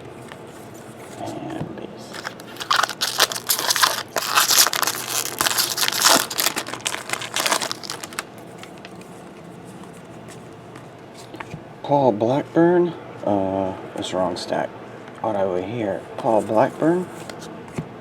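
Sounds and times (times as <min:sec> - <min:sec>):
wrapper crinkling and crackling: 0:02.1 - 0:09.0.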